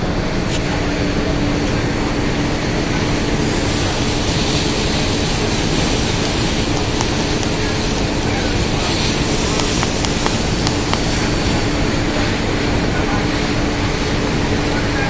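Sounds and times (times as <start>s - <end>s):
boat engine running: 0.0s - 15.0s
water noise: 2.6s - 13.2s.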